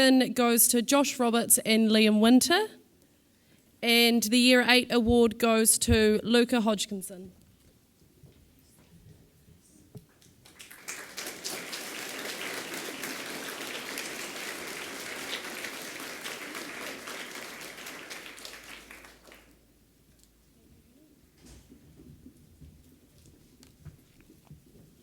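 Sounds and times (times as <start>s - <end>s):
audience applauding: 10.4s - 19.6s.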